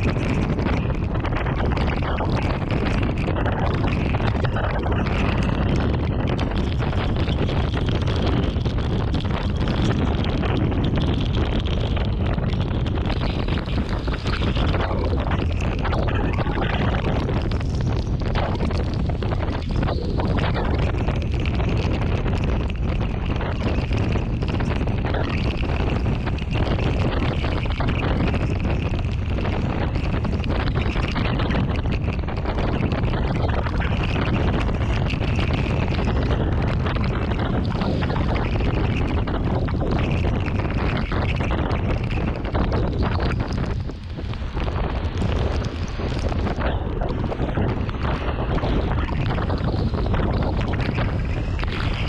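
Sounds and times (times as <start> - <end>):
wind blowing across microphone: 0.0 - 52.0.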